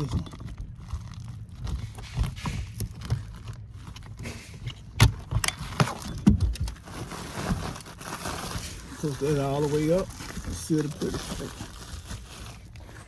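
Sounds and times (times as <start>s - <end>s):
ductwork knocks and clatter: 0.0s - 8.0s.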